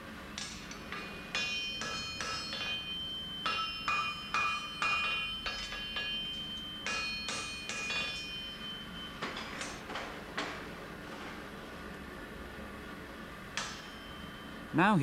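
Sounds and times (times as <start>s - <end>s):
hammer ringing on anvil: 0.4s - 10.6s, 13.6s - 14.6s.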